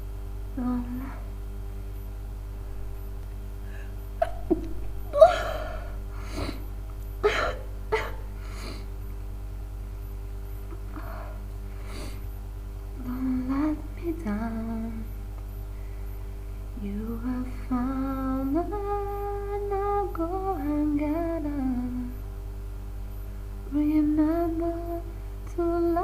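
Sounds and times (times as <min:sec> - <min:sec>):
woman sneezing: 0:07.2 - 0:08.3
woman singing: 0:13.0 - 0:15.1, 0:16.8 - 0:22.1, 0:23.7 - 0:26.0.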